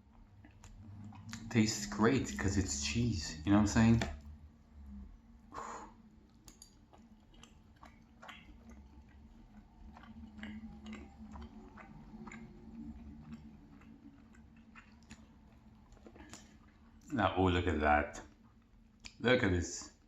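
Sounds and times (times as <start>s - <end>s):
wet mouth clicks: 0.0s - 2.4s, 5.6s - 17.2s, 18.6s - 19.2s
quiet chewing: 0.0s - 4.3s, 5.4s - 17.2s, 18.2s - 19.2s.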